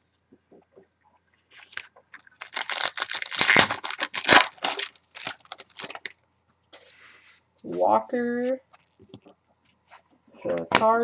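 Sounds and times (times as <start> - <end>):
wrapper being torn and crinkled: 1.6 - 6.2.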